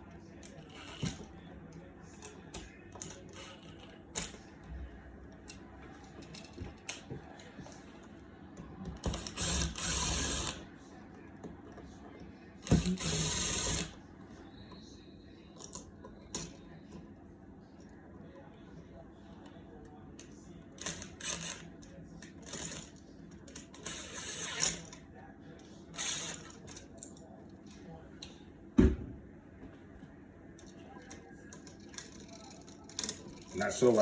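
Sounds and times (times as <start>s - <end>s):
tools clicking and rattling: 5.4s - 7.8s, 30.6s - 34.0s.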